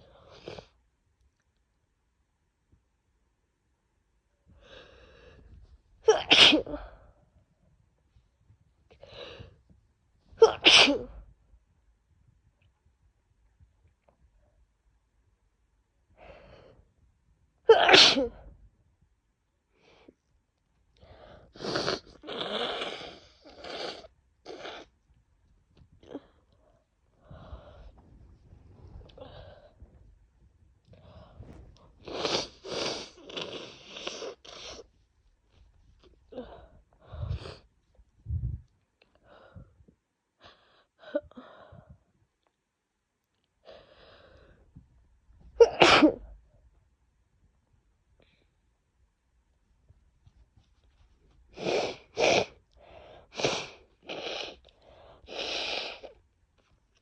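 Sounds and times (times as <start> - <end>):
woman making harsh nasal bursts: 32.0 - 34.8, 51.6 - 52.6, 55.3 - 56.1.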